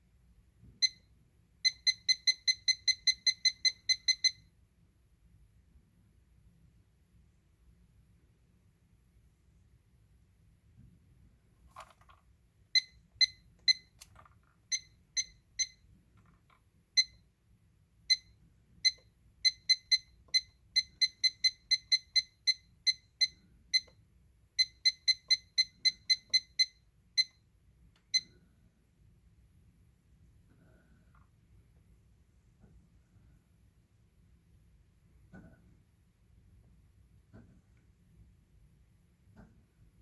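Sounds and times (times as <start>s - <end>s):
clock timer high beeps: 0.8s - 1.0s, 1.6s - 4.4s, 12.8s - 13.9s, 14.7s - 15.8s, 17.0s - 17.2s, 18.1s - 24.0s, 24.6s - 27.4s.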